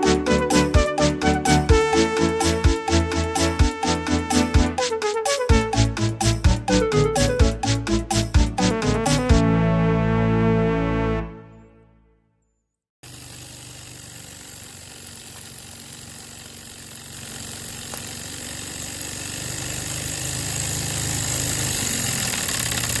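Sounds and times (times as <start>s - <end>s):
steam locomotive running: 13.1s - 23.0s.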